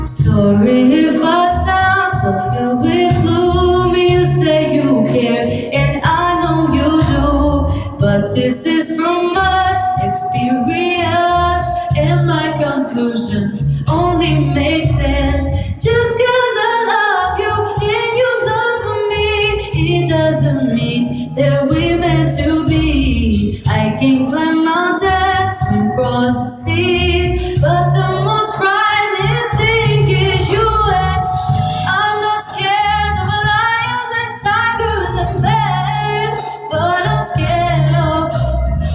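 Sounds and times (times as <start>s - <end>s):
instrumental backing with bass: 0.0s - 38.9s
woman singing with vibrato: 0.0s - 38.9s.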